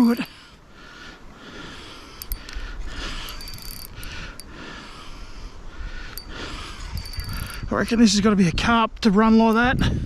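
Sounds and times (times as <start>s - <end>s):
fishing reel clicks: 2.2s - 2.6s, 3.2s - 4.5s, 6.1s - 7.6s
fishing reel gears whirring: 2.2s - 2.6s, 3.2s - 4.5s, 6.1s - 7.6s.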